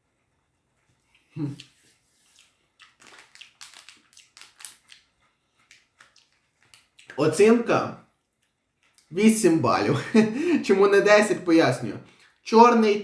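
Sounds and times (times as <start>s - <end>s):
crackling clicks of snack wrapper: 2.4s - 7.0s.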